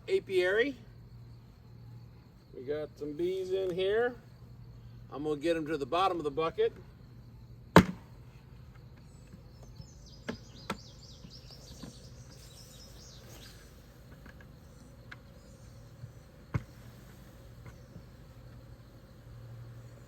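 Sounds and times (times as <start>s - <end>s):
faint buzz of bees: 0.0s - 20.0s
knocks on bucket: 7.8s - 8.0s
birds chirping: 8.2s - 20.0s.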